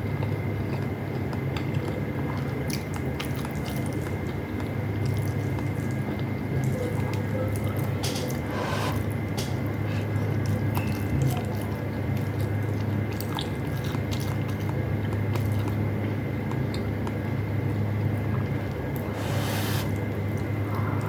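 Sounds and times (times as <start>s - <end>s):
person chewing food: 0.0s - 21.0s.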